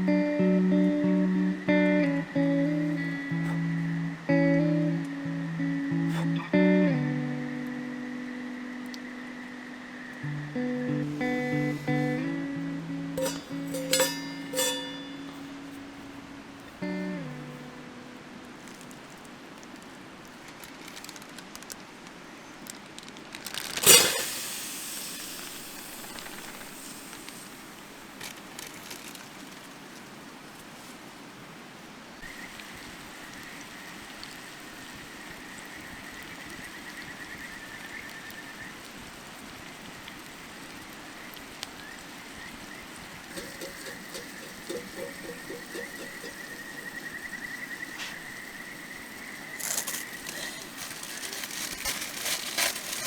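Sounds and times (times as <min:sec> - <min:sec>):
steady rushing hiss: 0:00.0 - 0:53.0
thin high steady tone: 0:06.9 - 0:18.2.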